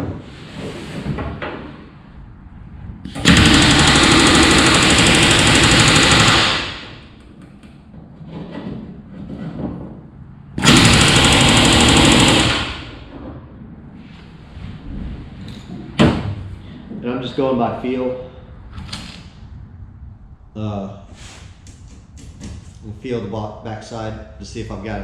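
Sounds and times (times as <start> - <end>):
rivet gun hammering metal: 3.2 - 7.0, 10.6 - 12.9.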